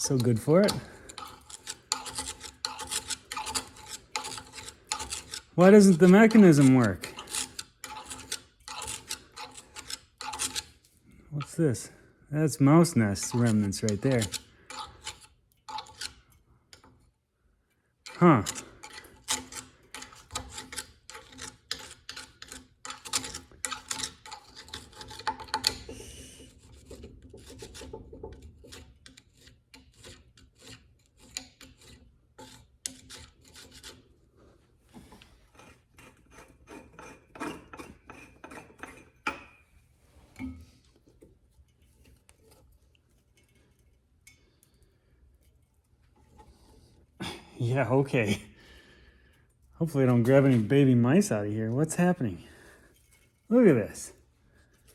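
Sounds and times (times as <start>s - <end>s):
scraping and clicking in drill press: 0.0s - 11.5s, 13.1s - 17.0s, 18.0s - 34.2s, 34.9s - 39.7s.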